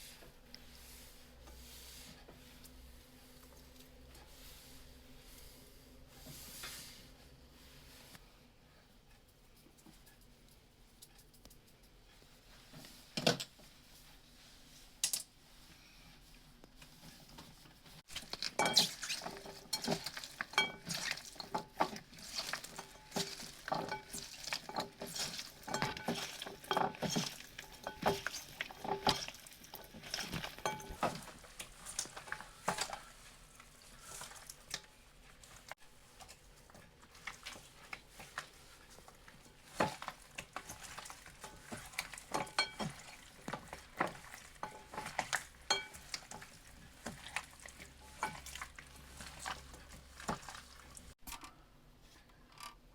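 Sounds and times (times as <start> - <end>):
utensil clinking against cookware: 18.4 - 31.4, 39.7 - 49.7.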